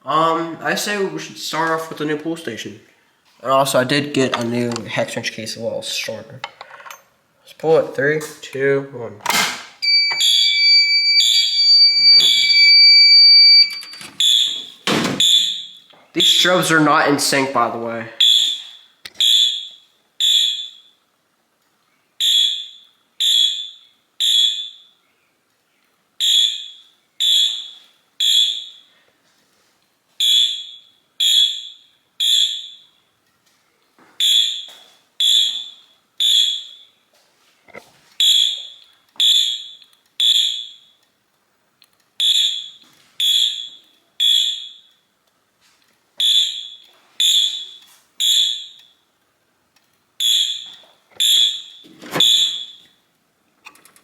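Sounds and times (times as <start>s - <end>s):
fire alarm horn chirping: 9.8s - 16.7s, 18.2s - 21.0s, 22.2s - 25.0s, 26.2s - 28.9s, 30.2s - 33.1s, 34.2s - 37.0s, 38.2s - 41.0s, 42.2s - 45.1s, 46.2s - 49.1s, 50.2s - 53.0s.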